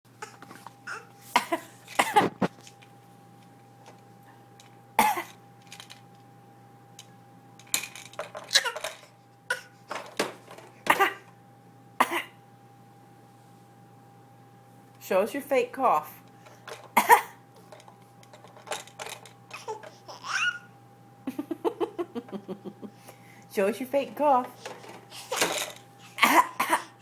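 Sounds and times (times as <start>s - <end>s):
baby fake coughing: 0.2s - 2.4s, 5.0s - 5.4s, 8.5s - 8.8s, 9.5s - 9.8s, 10.9s - 11.3s, 12.0s - 12.4s, 17.0s - 17.4s, 19.5s - 20.7s, 25.2s - 27.0s.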